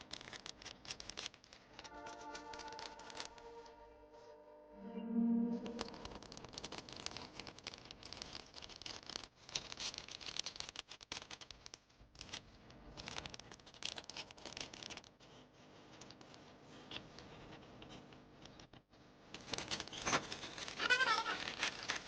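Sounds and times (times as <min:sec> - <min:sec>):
packing materials rustling and crinkling: 0:05.9 - 0:17.0, 0:19.4 - 0:22.0.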